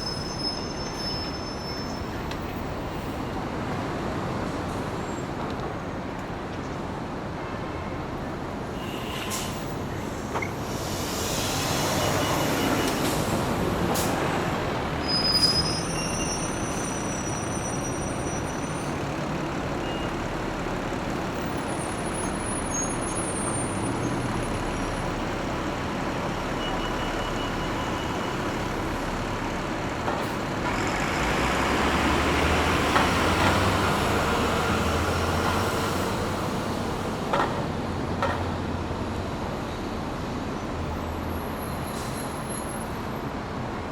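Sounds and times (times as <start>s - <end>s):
brief high squeaks: 0.0s - 2.2s, 15.0s - 18.9s
buses running: 0.0s - 43.9s
traffic noise: 0.0s - 43.9s.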